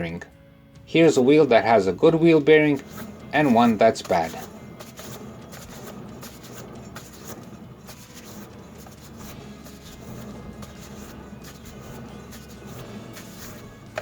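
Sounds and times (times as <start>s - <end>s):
wheel bearing rumbling: 1.0s - 14.0s
small clicks and scrapes: 2.7s - 14.0s.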